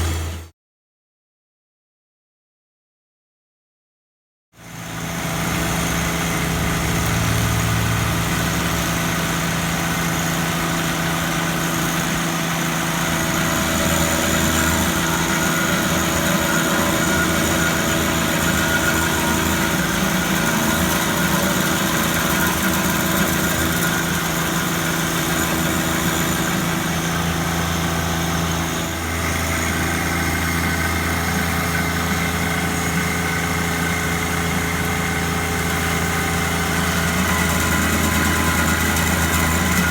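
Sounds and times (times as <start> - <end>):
engine running steadily: 0.0 - 0.5, 4.6 - 39.9.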